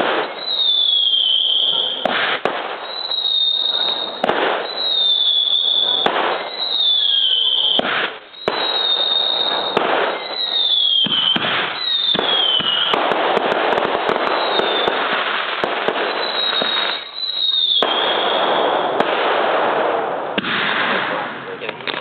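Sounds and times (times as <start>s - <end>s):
falling whistles: 0.0s - 2.1s, 2.8s - 13.0s, 14.2s - 15.0s, 15.9s - 18.9s
fireworks bangs: 0.0s - 22.0s
fireworks crackle: 0.0s - 22.0s.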